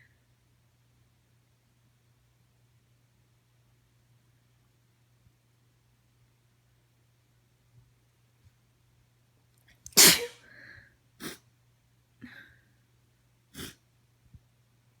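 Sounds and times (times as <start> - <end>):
woman sneezing: 10.0 - 10.4.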